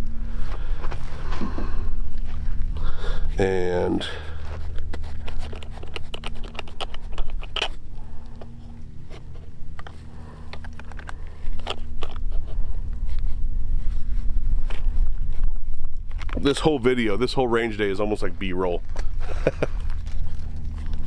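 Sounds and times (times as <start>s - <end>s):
steady low hum: 0.0s - 21.0s
gear clicks taps and scrapes: 3.9s - 16.6s, 18.9s - 21.0s.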